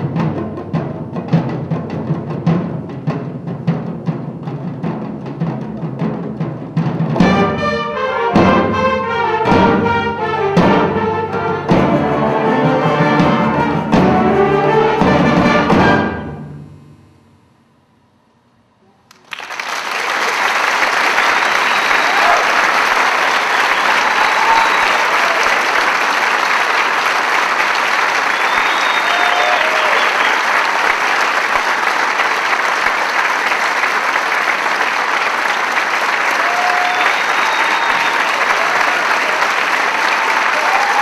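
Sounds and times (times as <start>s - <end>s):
audience applauding: 19.1s - 41.0s
audience calls: 19.1s - 41.0s.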